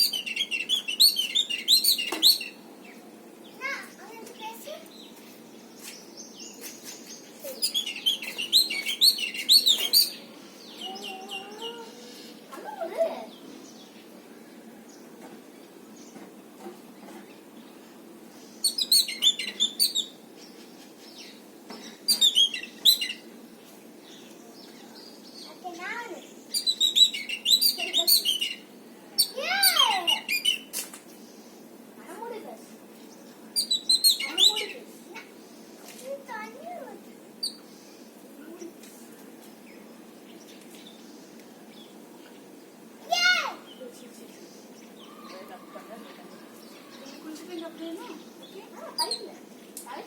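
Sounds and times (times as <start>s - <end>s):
bird chirping: 0.0s - 12.5s, 17.0s - 31.8s, 33.0s - 35.8s, 37.4s - 38.8s, 43.6s - 50.0s
steady background hiss: 0.0s - 50.0s
faint bird chirps: 4.7s - 15.0s, 18.4s - 23.2s, 43.2s - 49.4s.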